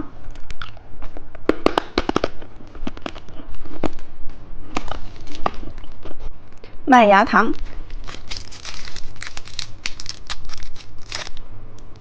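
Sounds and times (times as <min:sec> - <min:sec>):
candy clicking and crackling: 0:04.7 - 0:06.2, 0:07.5 - 0:12.0.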